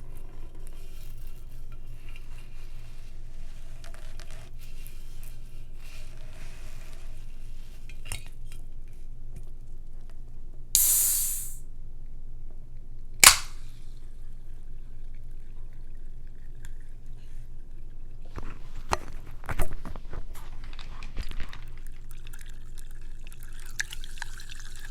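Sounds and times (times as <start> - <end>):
sharp clink: 10.8 - 11.6, 13.2 - 13.6
short hiss: 10.8 - 11.6.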